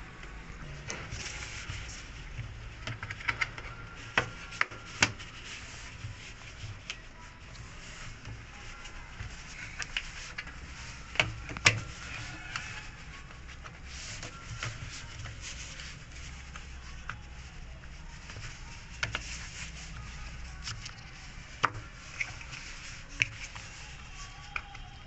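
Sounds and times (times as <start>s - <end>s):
light rubbing and scraping: 0.0s - 25.0s.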